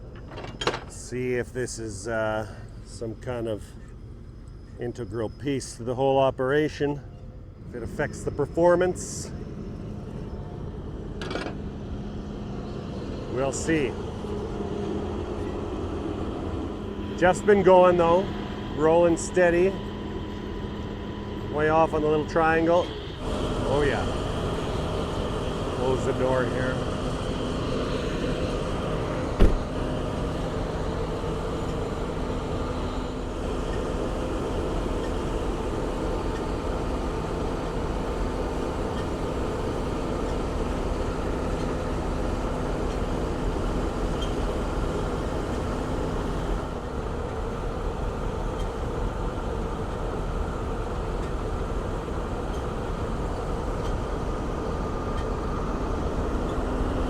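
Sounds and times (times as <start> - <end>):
engine drone inside vehicle cab: 0.0 - 57.0
cab door shutting: 29.3 - 29.9.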